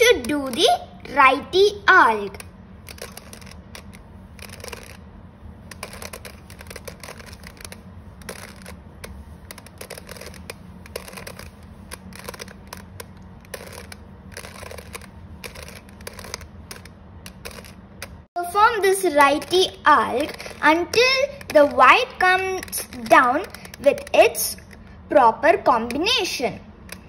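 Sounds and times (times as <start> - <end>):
puzzle cube layers clicking: 1.8 - 5.0, 5.6 - 24.8.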